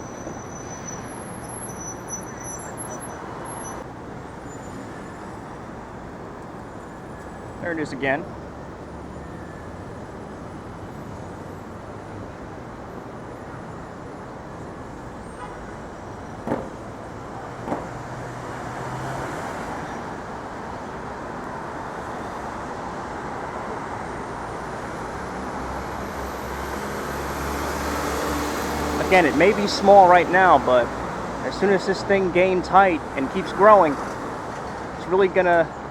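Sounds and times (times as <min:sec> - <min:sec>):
hum of passing vehicles: 0:00.0 - 0:35.9
short sharp knocks: 0:16.4 - 0:17.0, 0:17.6 - 0:18.1.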